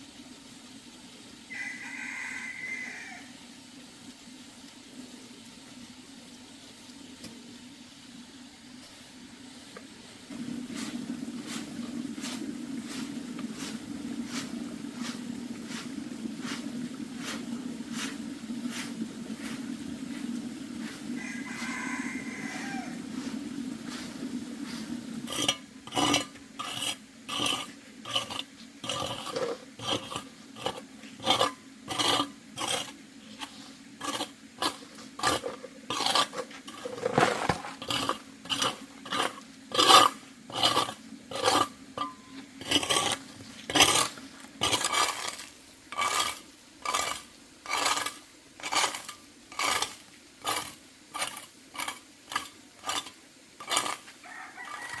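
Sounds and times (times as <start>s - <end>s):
hand tool scraping strokes: 10.7s - 20.2s, 22.5s - 55.0s.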